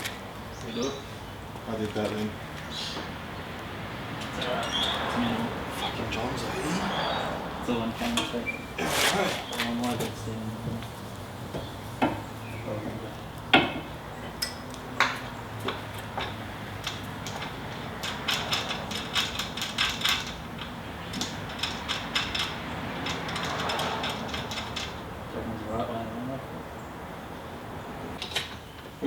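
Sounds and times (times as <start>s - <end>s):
metal tools clinking: 16.9s - 25.0s.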